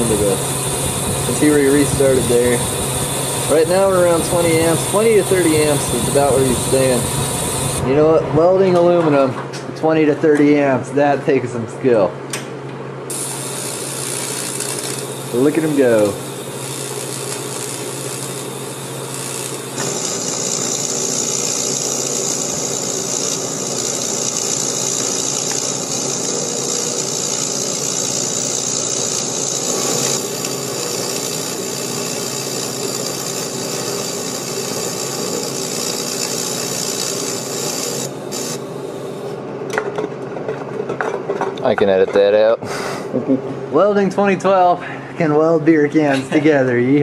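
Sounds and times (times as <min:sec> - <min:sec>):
welding arc buzzing: 0:00.0 - 0:08.5, 0:13.1 - 0:39.4.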